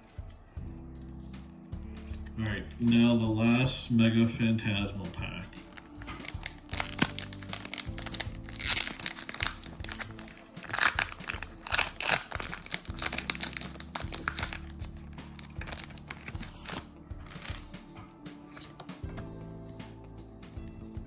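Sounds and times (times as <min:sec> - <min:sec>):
background music with low notes: 0:00.0 - 0:21.0
foil wrapper tearing and crinkling: 0:05.7 - 0:17.6.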